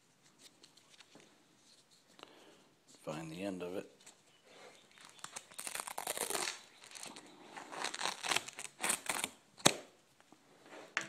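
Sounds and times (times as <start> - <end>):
velcro ripping: 5.0 - 9.8.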